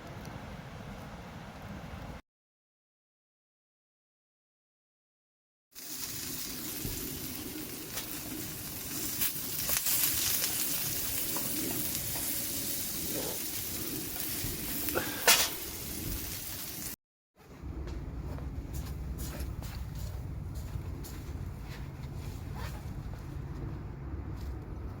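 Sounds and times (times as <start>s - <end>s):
food sizzling in a pan: 5.8s - 17.0s.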